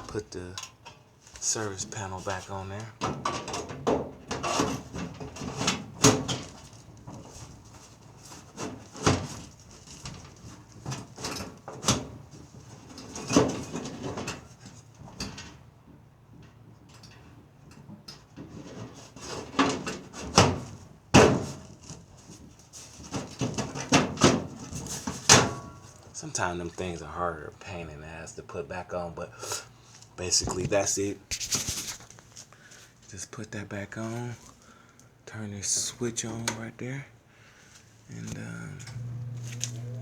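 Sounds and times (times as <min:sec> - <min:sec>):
sheet metal clanks and scrapes: 0:03.0 - 0:07.5, 0:22.9 - 0:26.0.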